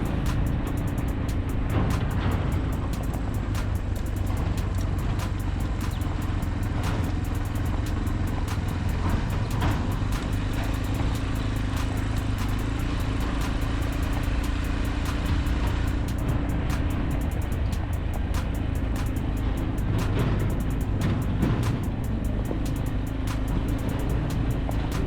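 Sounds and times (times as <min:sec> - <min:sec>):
constant hum: 0:00.0 - 0:25.0
motor vehicle engine rumble: 0:00.0 - 0:25.0.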